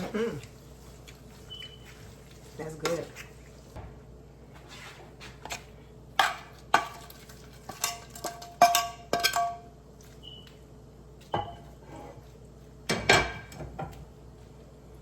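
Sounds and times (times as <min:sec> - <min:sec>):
cookware clinking: 0:06.2 - 0:09.7, 0:11.3 - 0:11.7.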